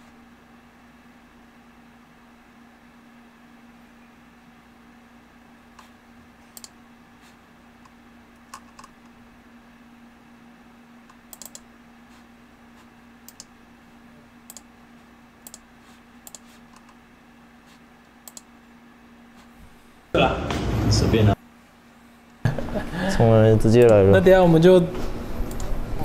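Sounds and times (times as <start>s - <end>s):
faint low hum: 0.0s - 26.0s
computer key presses and clicks: 11.3s - 11.6s.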